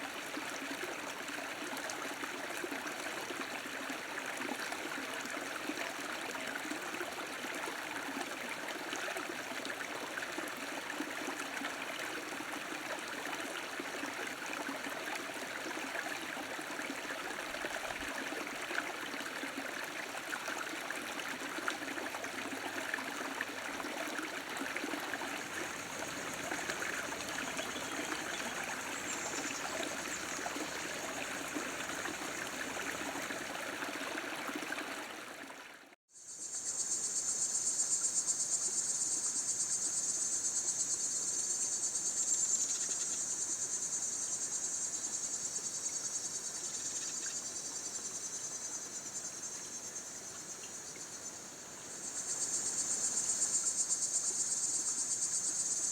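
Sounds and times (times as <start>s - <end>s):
small stream running: 0.0s - 36.0s, 38.0s - 55.9s
high-pitched insect trill: 25.2s - 33.5s.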